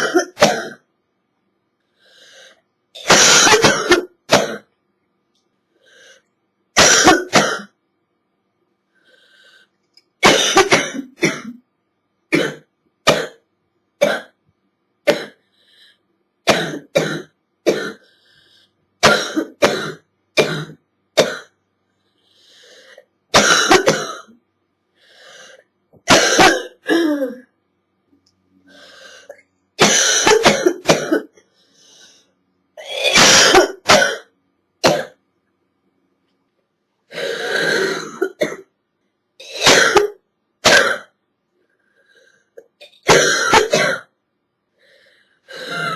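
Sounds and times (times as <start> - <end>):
girl coughing: 0.0 - 0.9, 3.0 - 4.7, 6.8 - 7.8, 10.2 - 11.6, 23.3 - 24.3, 26.1 - 27.5, 29.8 - 31.3, 32.8 - 34.3, 37.6 - 38.7, 39.4 - 41.2, 42.8 - 44.1.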